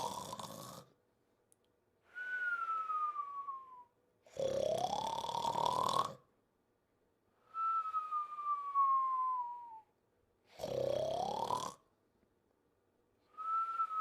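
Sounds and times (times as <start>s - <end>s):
cartoon rasping snore: 0.0s - 1.0s, 4.2s - 6.3s, 10.5s - 11.8s
downward gliding whistle: 2.1s - 3.9s, 7.5s - 9.9s, 13.3s - 14.0s.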